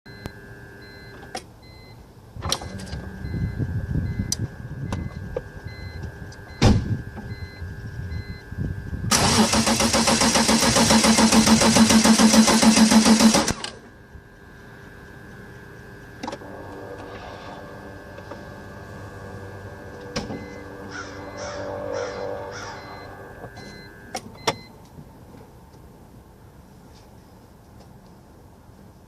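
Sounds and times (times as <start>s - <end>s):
low whir: 0.1s - 25.4s
starter motor cranking: 9.1s - 13.8s.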